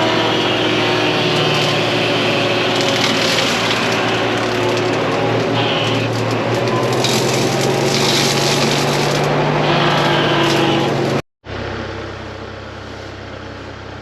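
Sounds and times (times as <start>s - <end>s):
mower head cutting branches: 0.0s - 11.2s
diesel engine running under load: 0.0s - 14.0s.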